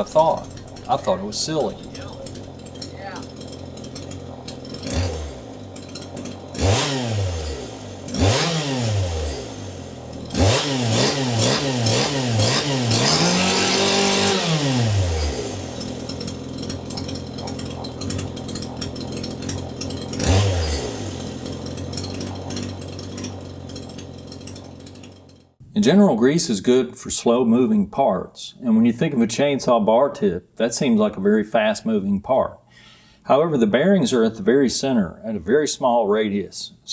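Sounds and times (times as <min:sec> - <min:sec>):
chainsaw idling and revving: 0:00.0 - 0:26.0.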